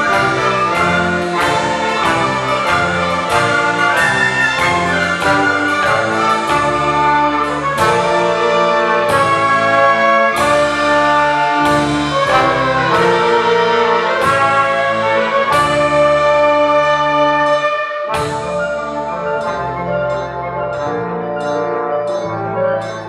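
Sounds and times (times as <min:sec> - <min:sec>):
orchestral music with brass chords: 0:00.0 - 0:23.0.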